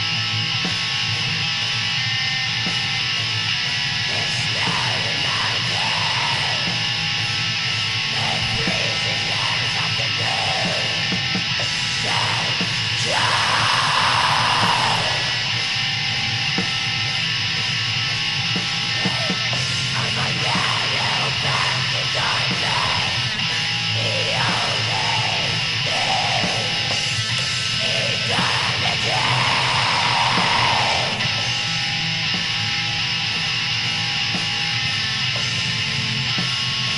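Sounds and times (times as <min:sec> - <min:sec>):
distorted electric guitars: 0:00.0 - 0:36.9
drums: 0:00.0 - 0:36.9
harsh shrieked vocals: 0:04.1 - 0:15.8, 0:19.0 - 0:31.8.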